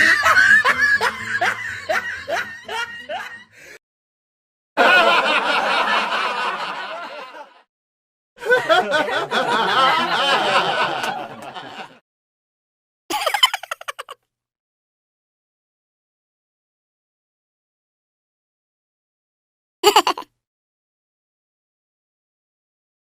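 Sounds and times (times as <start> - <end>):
rhythmic laugh: 0.0 - 3.7, 4.8 - 7.7, 8.4 - 12.0, 13.1 - 14.2, 19.8 - 20.2.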